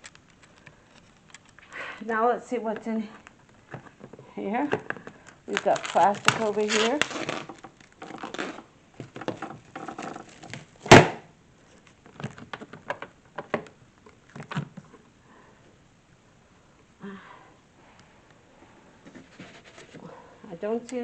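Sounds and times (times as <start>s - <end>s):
sharp loud knock: 10.9s - 11.2s.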